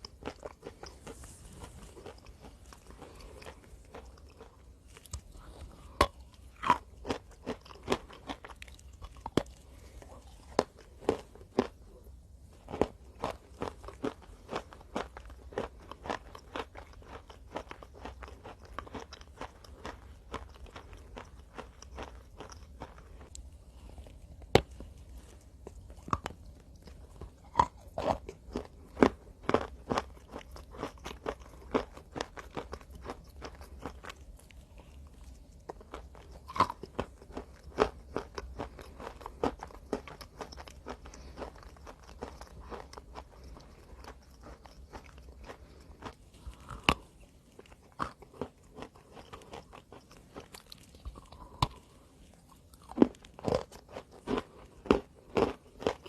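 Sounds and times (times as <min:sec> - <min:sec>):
person crunching crunchy food: 0:00.0 - 0:56.0.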